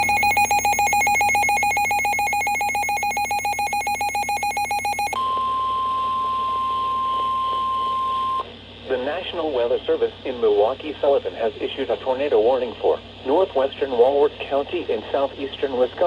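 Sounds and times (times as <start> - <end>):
steady alert tone: 0.0 - 5.2.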